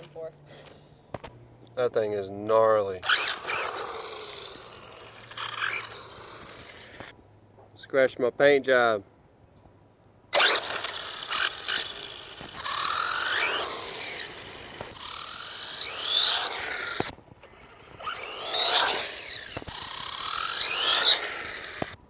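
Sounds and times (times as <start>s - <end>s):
toy truck motor whining: 3.0s - 7.2s, 10.3s - 22.0s.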